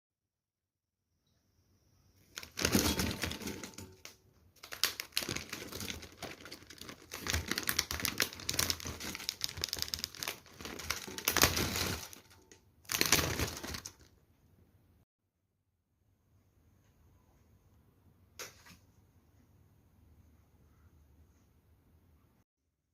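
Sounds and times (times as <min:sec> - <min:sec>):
food crinkling: 0:02.4 - 0:14.1.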